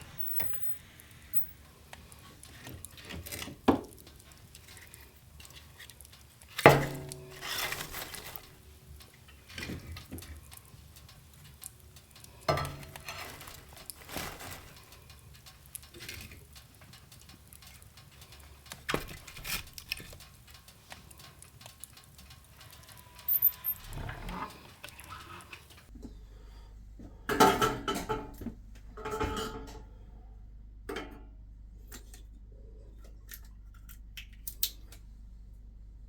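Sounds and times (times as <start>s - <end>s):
dishes and cutlery clinking: 29.0s - 29.8s.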